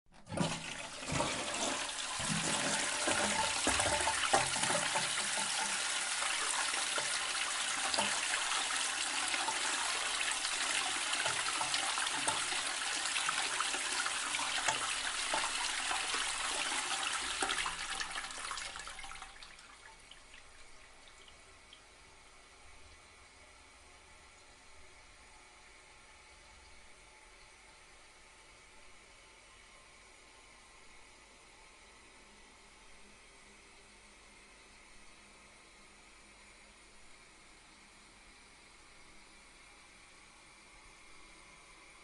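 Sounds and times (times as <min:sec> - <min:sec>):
toilet flushing: 0:00.1 - 0:23.4.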